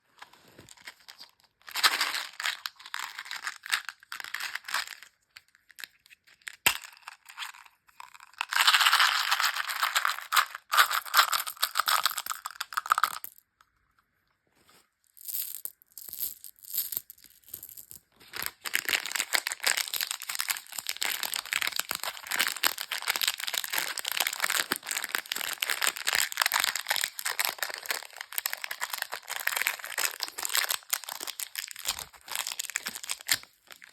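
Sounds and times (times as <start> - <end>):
candy wrappers crinkling and tearing: 0.7 - 5.1, 7.4 - 13.2, 18.4 - 33.9.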